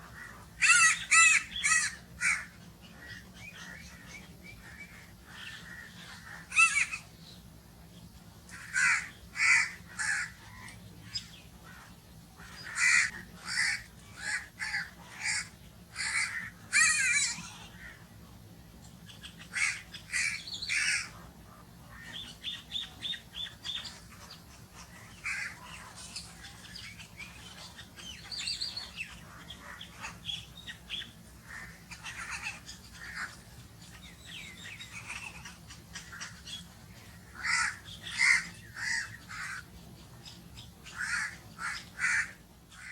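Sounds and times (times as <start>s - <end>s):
crows cawing: 0.0s - 7.0s, 8.5s - 10.8s, 11.6s - 18.0s, 19.4s - 21.2s, 23.6s - 26.7s, 31.4s - 39.7s, 40.8s - 42.9s.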